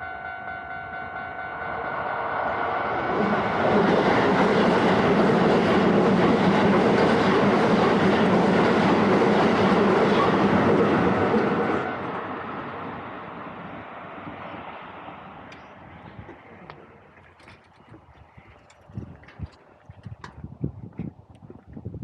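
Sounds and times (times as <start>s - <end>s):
train wheels rumbling on rails: 1.6s - 18.1s.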